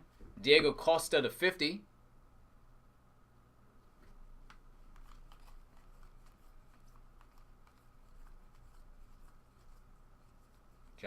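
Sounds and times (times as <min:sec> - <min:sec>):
trading cards being handled: 0:03.9 - 0:11.0.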